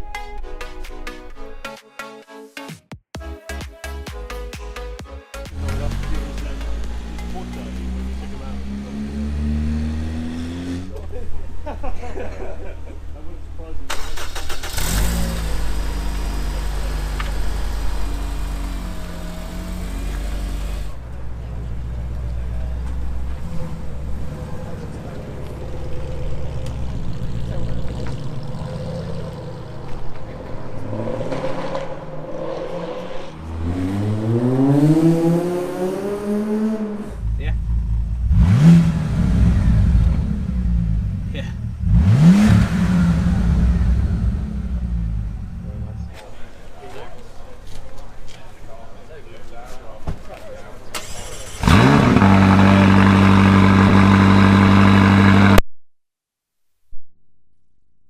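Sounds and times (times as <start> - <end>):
car engine accelerating: 5.5 - 11.7, 13.1 - 46.3, 50.9 - 55.6.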